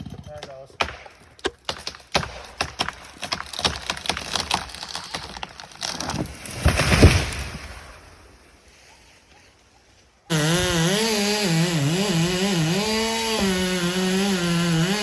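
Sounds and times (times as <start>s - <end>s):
tree cracking and snapping: 0.8s - 8.1s
tree crashing through branches: 3.3s - 8.4s
chainsaw starting: 10.3s - 15.0s.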